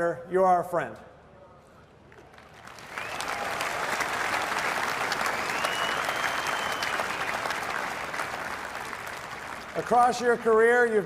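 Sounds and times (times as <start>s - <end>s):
large audience applauding: 2.3s - 11.0s.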